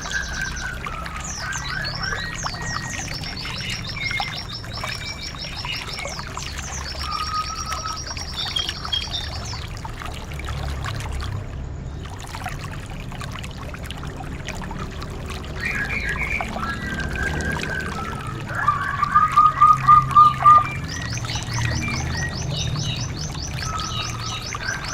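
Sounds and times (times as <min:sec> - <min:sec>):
songbird high trill: 0:00.0 - 0:09.6, 0:15.6 - 0:24.9
low bird chirps: 0:00.0 - 0:09.9, 0:15.4 - 0:24.9.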